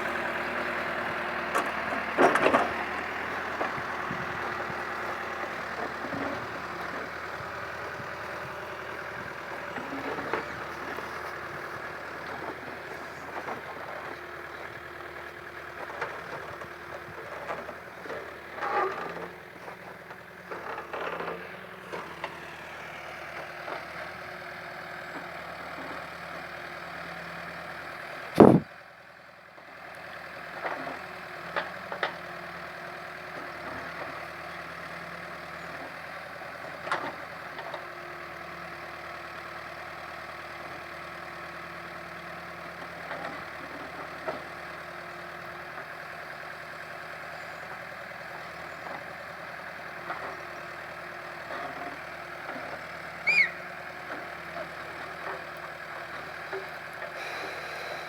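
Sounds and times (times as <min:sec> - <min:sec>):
diesel engine running: 0:00.0 - 0:58.0
loud thump: 0:28.4 - 0:28.6.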